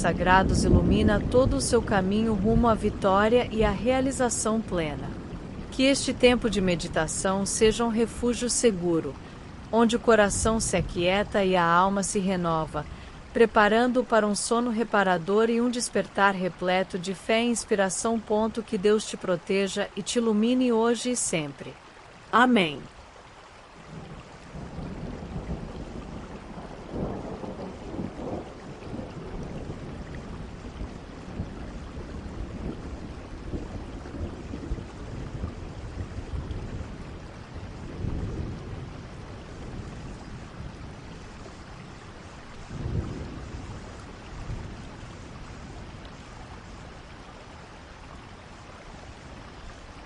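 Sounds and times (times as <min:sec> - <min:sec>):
low thunder rumbles: 0:00.0 - 0:08.2, 0:23.8 - 0:50.0
steady rain falling: 0:00.0 - 0:50.0.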